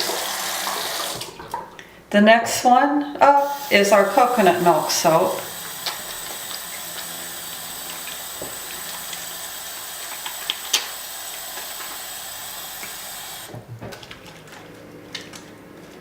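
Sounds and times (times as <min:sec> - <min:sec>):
tap water running into sink: 0:00.0 - 0:01.8, 0:03.4 - 0:13.6
wet hands lathering soap: 0:03.4 - 0:13.5.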